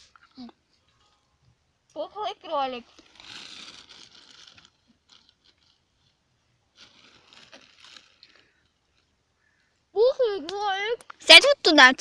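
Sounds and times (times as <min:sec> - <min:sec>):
corn snacks crinkling and crunching: 0:02.8 - 0:09.1.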